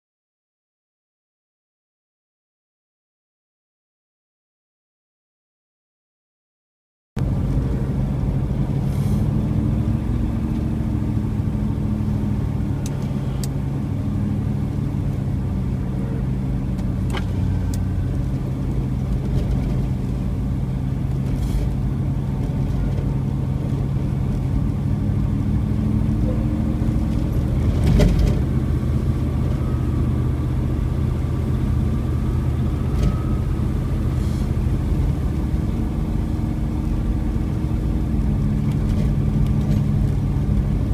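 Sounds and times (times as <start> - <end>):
car engine and road noise: 7.2 - 40.9.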